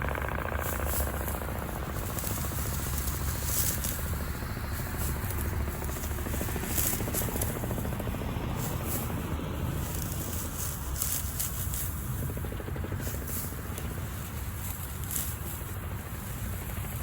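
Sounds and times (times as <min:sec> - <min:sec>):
engine running with pulsing rumble: 0:00.0 - 0:17.0.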